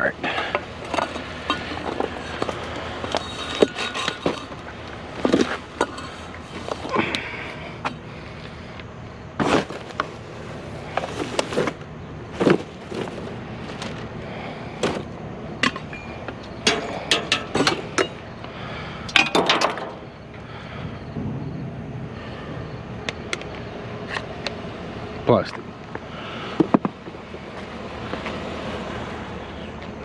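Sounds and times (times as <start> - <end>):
scrap metal and plastic clattering: 0.2 - 7.2, 9.4 - 18.3, 19.1 - 20.0.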